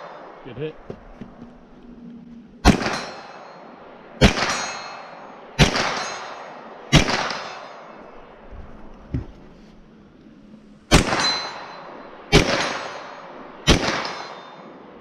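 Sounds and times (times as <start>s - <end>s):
metallic ring of steel targets: 2.6s - 8.2s, 10.9s - 14.8s
echoing gunshots: 2.6s - 8.9s, 10.9s - 15.0s.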